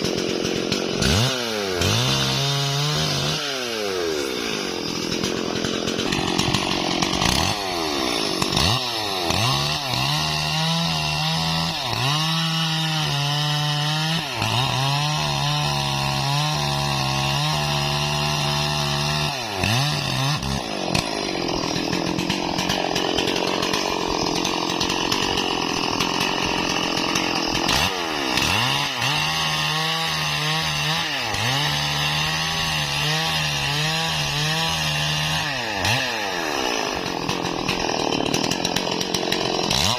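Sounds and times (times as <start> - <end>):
chainsaw cutting into tree trunk: 0.0 - 39.9.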